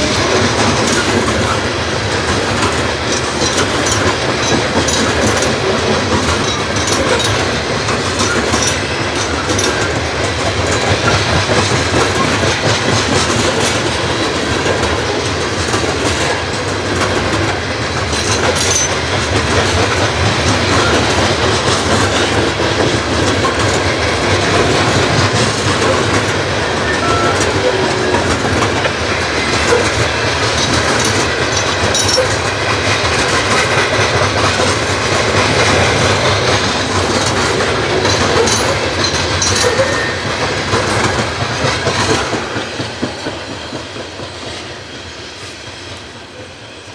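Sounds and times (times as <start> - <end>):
train wheels clacking over rail joints: 0.0 - 46.9.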